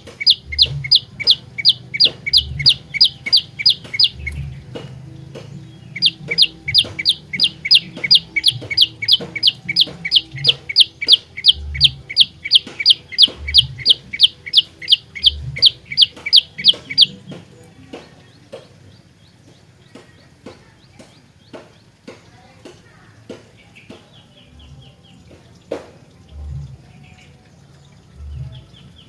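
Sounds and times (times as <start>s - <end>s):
bird calling sharp notes: 0.0s - 17.6s
faint low thumps: 0.0s - 22.0s, 22.8s - 27.2s, 28.0s - 29.0s.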